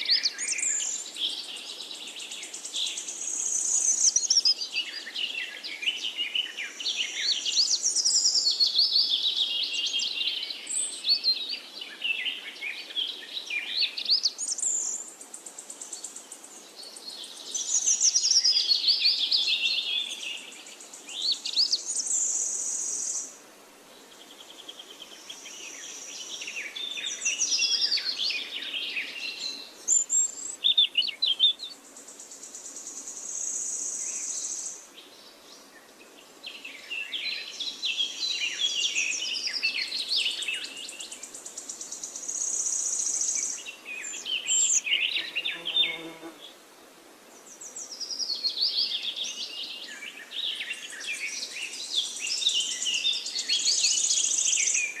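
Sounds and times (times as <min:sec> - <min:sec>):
songbirds singing and chirping: 0:00.0 - 0:55.0
insects hissing: 0:00.3 - 0:05.3, 0:14.3 - 0:23.4, 0:24.2 - 0:34.9, 0:36.3 - 0:46.7, 0:50.2 - 0:55.0.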